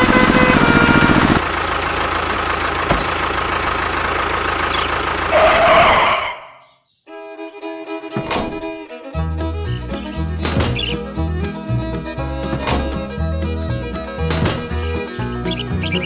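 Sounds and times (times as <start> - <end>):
small engine running: 0.0 - 5.6
steady mechanical noise: 8.2 - 8.8, 9.4 - 16.0
loud rasping noise: 8.2 - 16.0.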